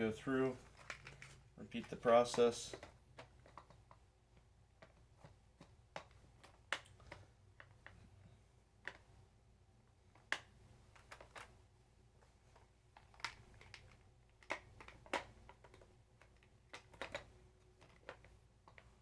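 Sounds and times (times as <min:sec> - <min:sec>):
plastic parts clicking: 0:00.6 - 0:04.0, 0:10.1 - 0:11.5, 0:12.5 - 0:19.0.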